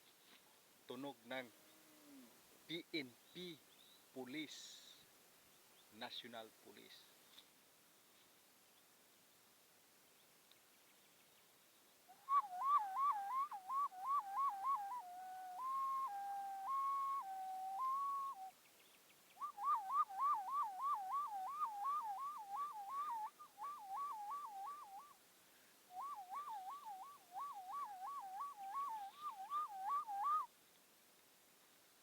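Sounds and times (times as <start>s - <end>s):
person whistling siren imitation: 12.3s - 18.5s, 19.4s - 25.1s, 26.0s - 30.4s.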